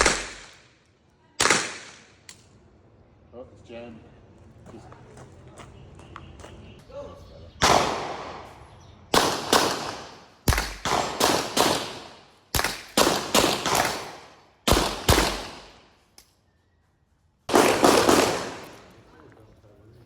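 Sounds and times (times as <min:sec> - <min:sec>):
gunshots with echoing decay: 0:00.0 - 0:00.8, 0:01.4 - 0:02.2, 0:07.6 - 0:16.0, 0:17.5 - 0:19.1.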